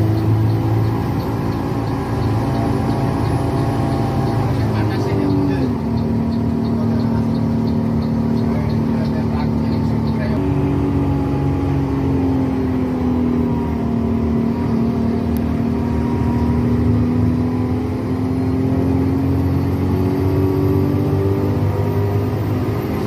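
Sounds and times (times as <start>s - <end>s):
bus diesel engine running: 0.0s - 23.0s.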